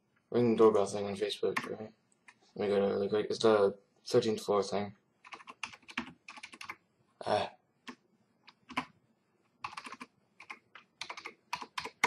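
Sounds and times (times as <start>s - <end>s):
typing on a computer keyboard: 5.2s - 6.8s, 7.8s - 9.0s, 9.6s - 12.0s.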